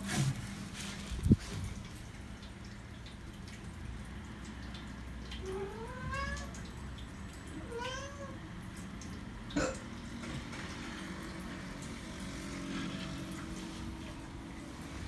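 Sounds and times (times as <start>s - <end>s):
cat meowing: 5.4s - 6.7s, 7.6s - 8.4s.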